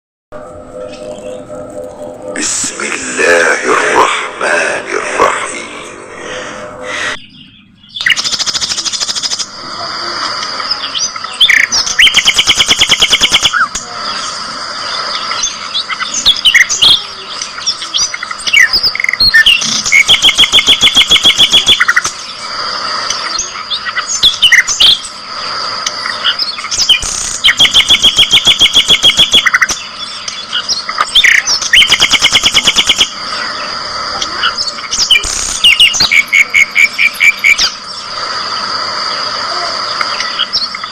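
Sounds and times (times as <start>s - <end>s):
high chatter of chicks: 4.8s - 40.9s
bursts of rapid chick chirps: 8.0s - 14.2s, 15.0s - 40.9s.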